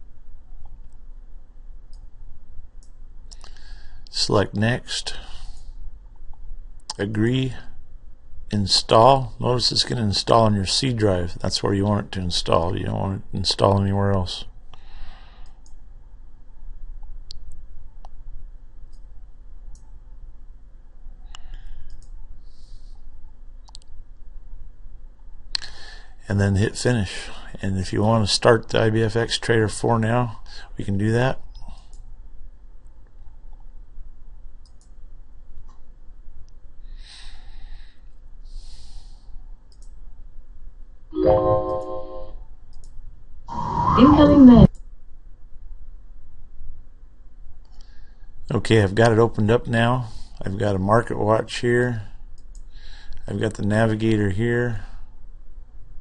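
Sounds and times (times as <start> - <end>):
low room hum: 0.0 - 56.0
computer mouse clicks: 21.3 - 22.2, 34.6 - 35.0, 39.7 - 40.0
computer chime: 41.2 - 42.4.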